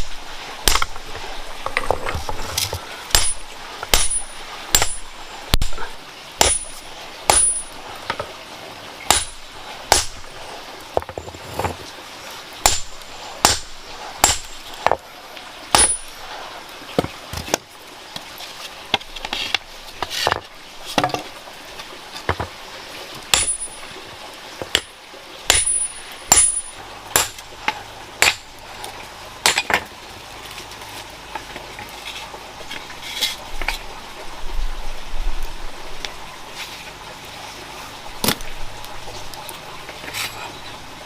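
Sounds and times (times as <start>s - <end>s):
faint steady hiss: 0.0s - 41.0s
hand tool striking metal: 3.1s - 5.8s, 6.4s - 7.8s, 9.1s - 10.2s, 15.7s - 16.1s, 23.3s - 23.8s, 25.5s - 27.4s, 28.2s - 28.5s.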